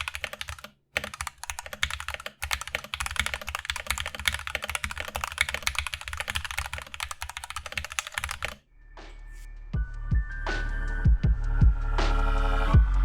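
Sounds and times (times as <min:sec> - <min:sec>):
mechanical keyboard typing: 0:00.0 - 0:08.6.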